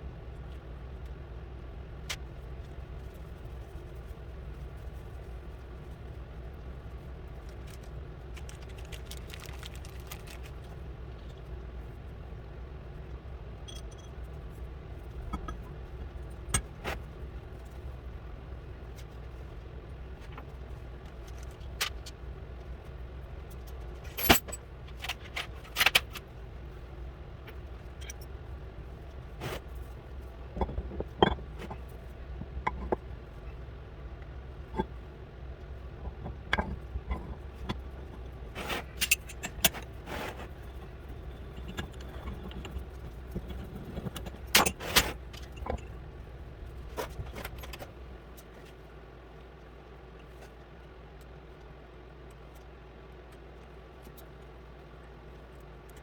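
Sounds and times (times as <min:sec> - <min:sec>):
steady low hum: 0:00.0 - 0:56.0
metal tools clinking and knocking: 0:24.1 - 0:26.0.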